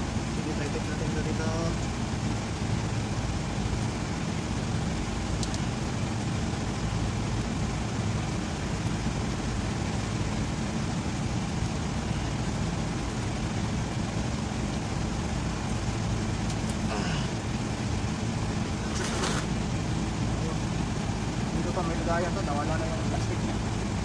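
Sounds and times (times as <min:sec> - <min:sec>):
low engine rumble: 0:00.0 - 0:24.0
faint clicks: 0:05.4 - 0:05.6.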